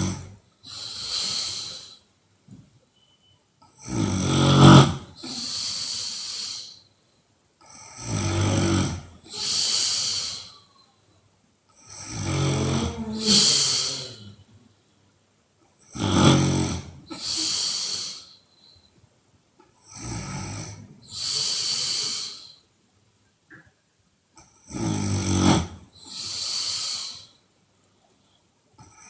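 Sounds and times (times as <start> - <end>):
woman snoring: 0.0 - 2.0, 3.7 - 6.8, 7.6 - 10.7, 11.8 - 14.4, 15.8 - 18.4, 19.8 - 22.6, 24.6 - 27.4.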